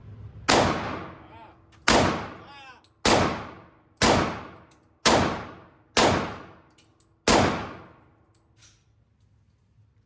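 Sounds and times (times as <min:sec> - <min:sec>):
pistol shots: 0:00.5 - 0:08.0.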